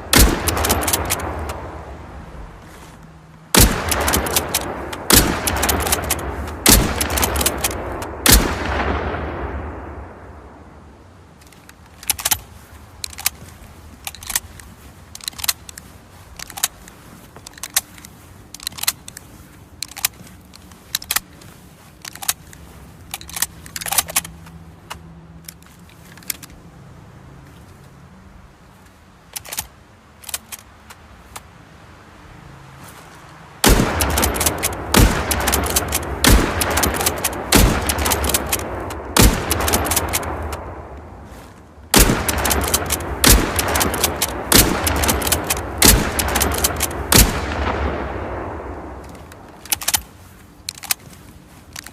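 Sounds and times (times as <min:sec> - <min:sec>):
rifle shots: 0:00.0 - 0:02.0, 0:03.5 - 0:10.5, 0:33.6 - 0:41.0, 0:41.9 - 0:50.1
volley of rifle fire: 0:00.1 - 0:01.8, 0:03.5 - 0:10.2, 0:33.6 - 0:40.8, 0:41.9 - 0:49.0.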